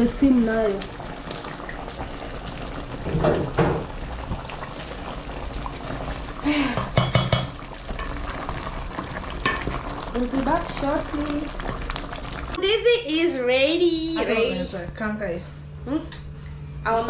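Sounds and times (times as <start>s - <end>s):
stew bubbling in pot: 0.0s - 12.7s.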